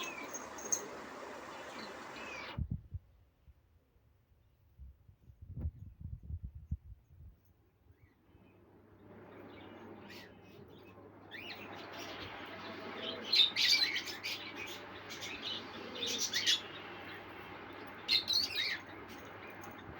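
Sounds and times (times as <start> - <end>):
steady background hiss: 0.0 - 2.6
small birds chirping: 0.0 - 3.3, 7.9 - 19.9.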